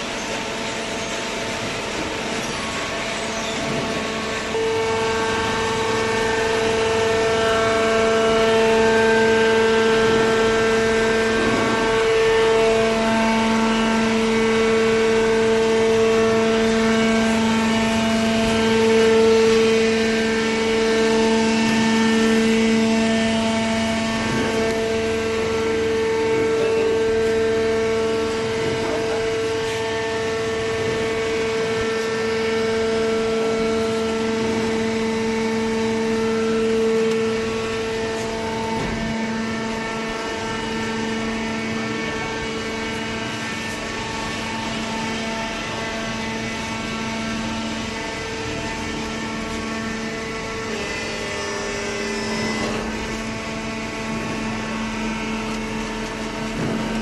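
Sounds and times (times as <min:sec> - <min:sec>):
hydraulic pump whining: 0:00.0 - 0:57.0.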